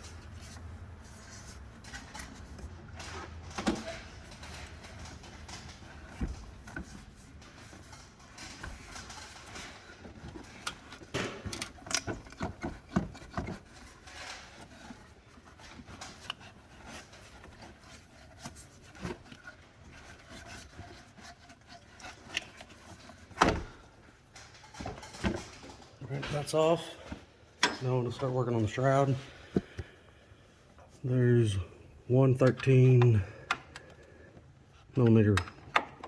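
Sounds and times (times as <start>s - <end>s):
rubber hose rubbing and clicking: 0.0s - 26.8s.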